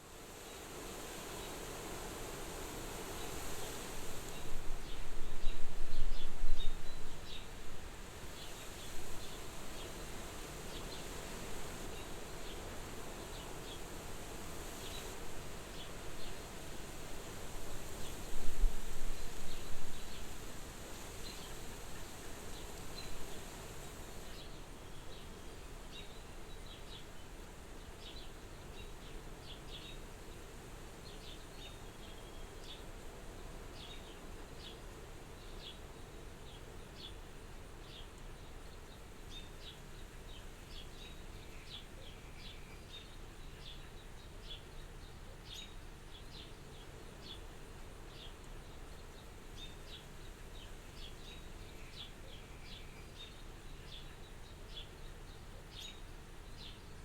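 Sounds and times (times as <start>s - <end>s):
soft wind blowing: 0.0s - 37.0s.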